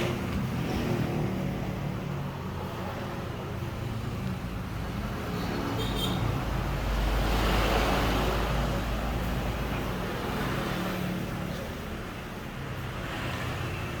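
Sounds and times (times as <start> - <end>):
road traffic rumble: 0.0 - 14.0.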